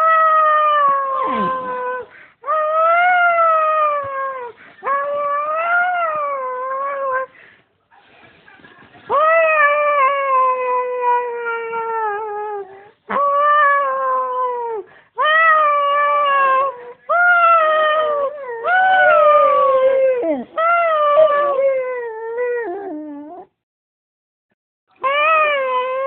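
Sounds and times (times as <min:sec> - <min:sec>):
dog howling: 0:09.2 - 0:23.5.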